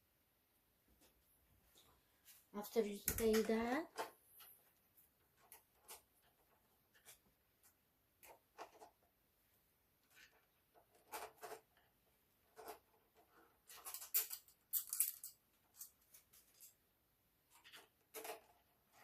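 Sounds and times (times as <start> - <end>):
tools scraping plastic: 3.1 - 9.1, 10.0 - 16.8, 17.5 - 19.0.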